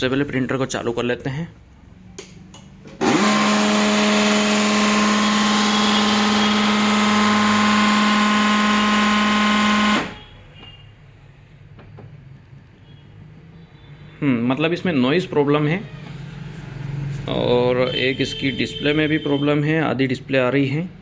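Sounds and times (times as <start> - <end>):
printer mechanism grinding drone: 3.0 - 10.2.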